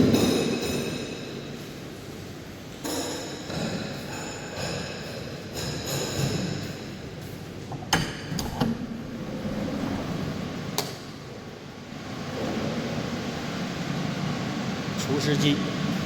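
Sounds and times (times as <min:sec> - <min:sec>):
refrigeration equipment hum: 0:00.0 - 0:16.0.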